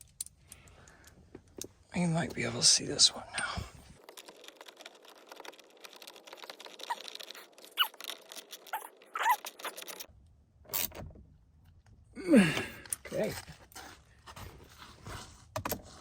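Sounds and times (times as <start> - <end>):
clicking of plastic parts: 0.0 - 1.7
brief squeaks: 6.3 - 10.1.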